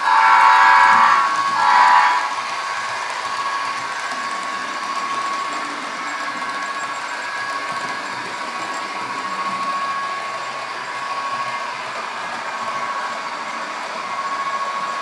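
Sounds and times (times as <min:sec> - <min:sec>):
model train motor whine: 0:00.0 - 0:15.0
wheels hissing on rail: 0:00.0 - 0:15.0.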